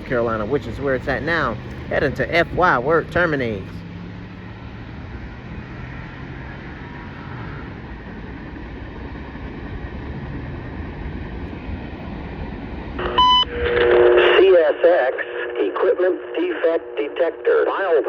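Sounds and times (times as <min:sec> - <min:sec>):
freight cars rumbling on rails: 0:00.0 - 0:13.8
diesel locomotive drone: 0:00.0 - 0:18.0
radio tone over scanner: 0:13.0 - 0:18.0.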